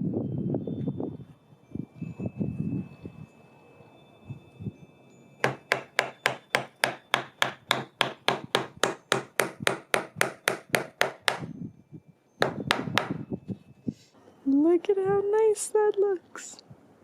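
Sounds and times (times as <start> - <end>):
hammer striking a nail into wood: 5.4 - 11.5, 12.4 - 13.2.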